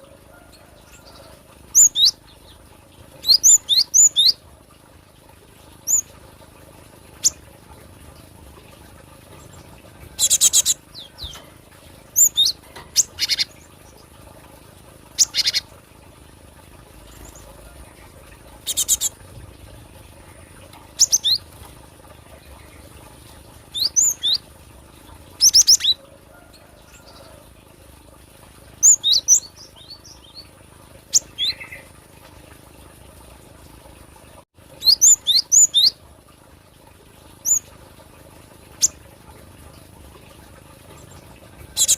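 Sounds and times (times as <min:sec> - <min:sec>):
bird chirping: 0:10.2 - 0:11.4, 0:15.2 - 0:15.6, 0:18.6 - 0:19.1, 0:21.0 - 0:21.4.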